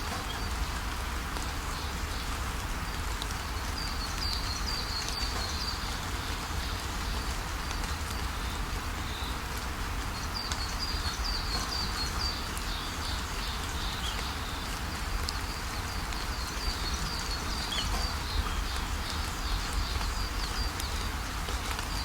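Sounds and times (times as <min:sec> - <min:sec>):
birds chirping: 0:10.2 - 0:22.0.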